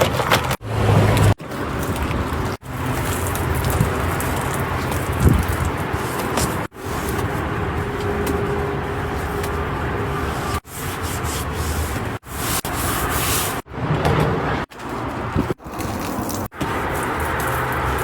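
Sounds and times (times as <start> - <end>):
soapy scrubbing: 0.0 - 13.6
hose washing windows: 1.0 - 13.7, 15.6 - 18.0.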